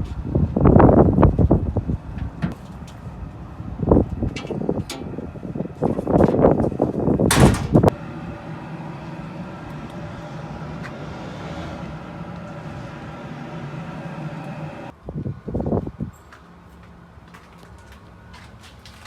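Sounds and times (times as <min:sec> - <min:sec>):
low mechanical hum: 0:00.0 - 0:16.2
loud rattling clatter: 0:05.9 - 0:07.9.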